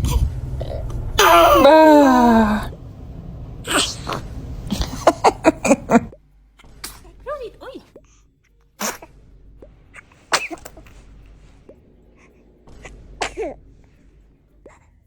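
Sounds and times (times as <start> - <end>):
baby sneezing: 3.7 - 6.0, 6.6 - 7.2, 8.8 - 9.2, 9.9 - 11.0, 12.7 - 13.6.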